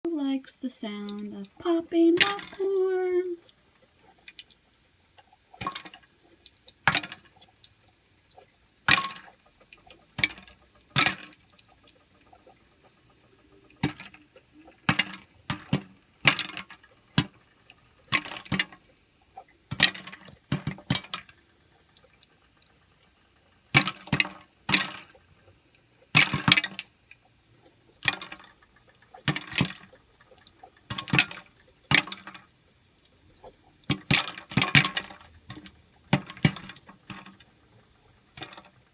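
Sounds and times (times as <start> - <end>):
popcorn popping: 1.0 - 25.4, 26.0 - 38.9.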